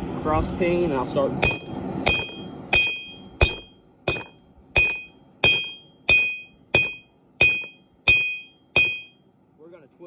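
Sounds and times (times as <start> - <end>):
hammer striking metal on anvil: 1.4 - 9.2.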